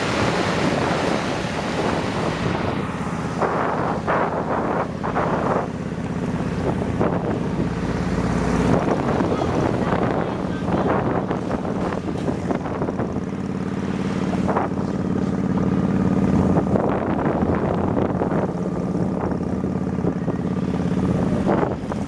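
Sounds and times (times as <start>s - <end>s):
wind buffeting microphone: 0.0s - 22.0s
motorbike engine running: 2.5s - 22.0s.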